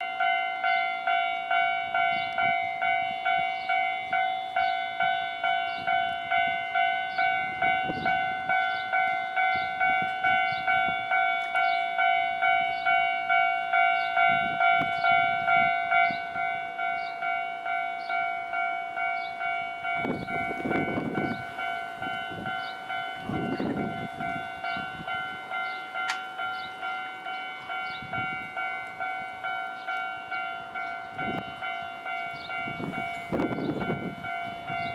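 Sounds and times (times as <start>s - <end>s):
level crossing bell clanging: 0.0s - 34.9s
train rumbling past: 0.0s - 34.9s.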